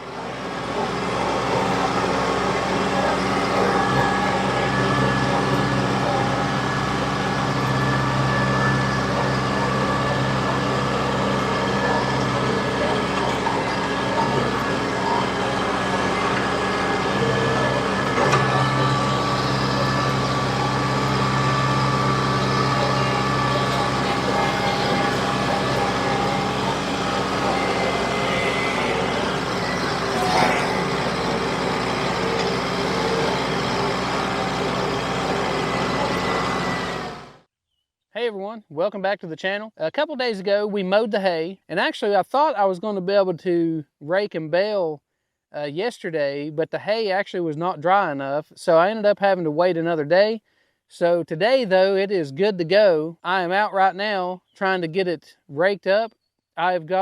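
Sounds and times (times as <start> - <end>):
tractor diesel engine running: 0.0 - 37.5.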